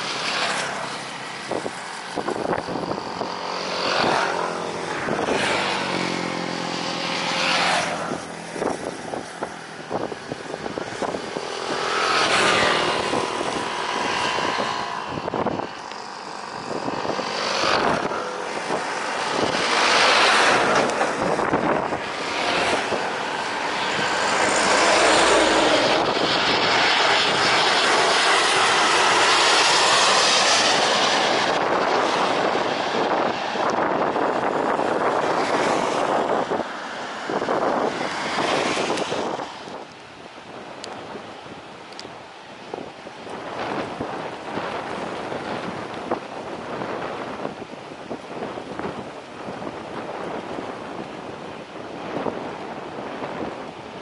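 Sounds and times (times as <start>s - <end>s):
jet engine roar: 0.0s - 54.0s
road vehicles whooshing past: 0.0s - 54.0s.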